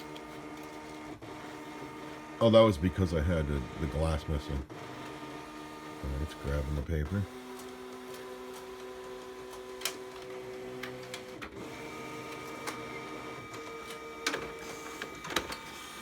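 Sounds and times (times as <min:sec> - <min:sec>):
printer motors humming: 0:00.0 - 0:16.0
printer clicks: 0:07.5 - 0:15.9.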